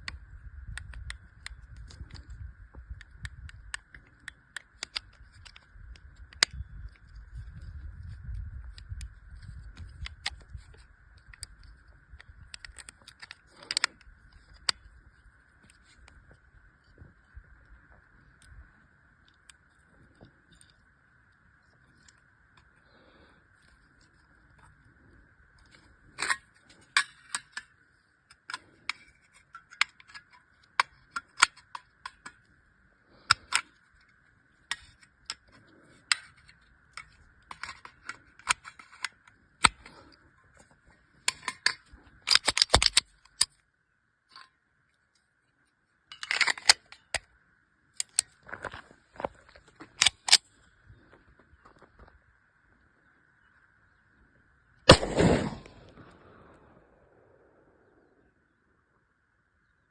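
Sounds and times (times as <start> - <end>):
metal pistol parts clicking: 0.0 - 14.9, 25.6 - 32.5, 33.2 - 40.2, 41.2 - 43.6, 46.1 - 48.4, 49.8 - 50.5, 54.9 - 56.5.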